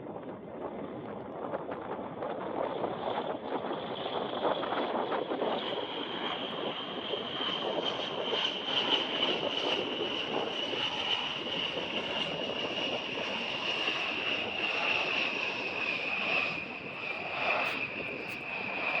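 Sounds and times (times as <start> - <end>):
jet engines whining: 5.5 - 19.0.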